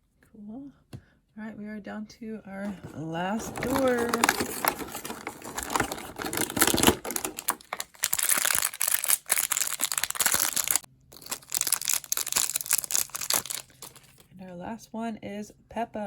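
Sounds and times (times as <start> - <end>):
plastic and cardboard crinkling: 2.6 - 14.4
packaging clicks and rustles: 3.4 - 14.3.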